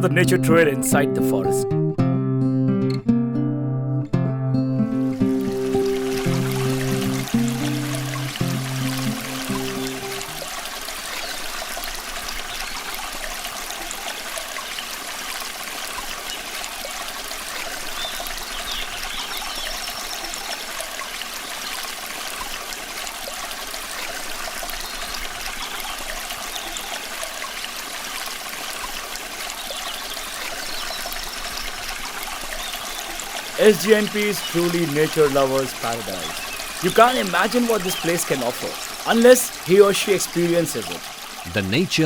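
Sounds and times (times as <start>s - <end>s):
background music: 0.0s - 10.4s, 33.6s - 41.0s
small stream trickling: 4.9s - 42.0s.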